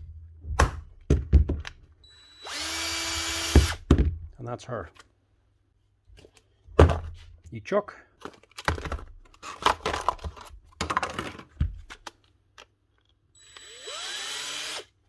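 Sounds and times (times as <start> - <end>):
drill motor winding up: 2.1 - 3.8, 13.4 - 14.9.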